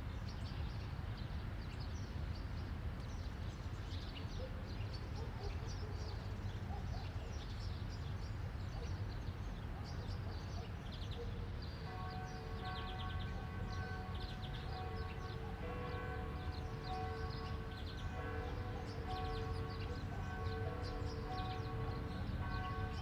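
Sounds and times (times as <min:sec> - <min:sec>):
birds chirping: 0:08.8 - 0:23.0.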